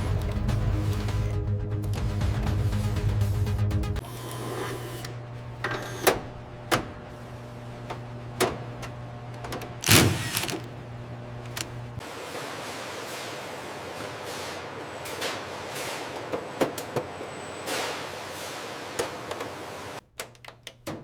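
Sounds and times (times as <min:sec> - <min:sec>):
music: 0:00.0 - 0:04.0
machinery humming: 0:09.8 - 0:10.7
mechanical clicks and clunks: 0:09.8 - 0:10.7, 0:11.4 - 0:11.8.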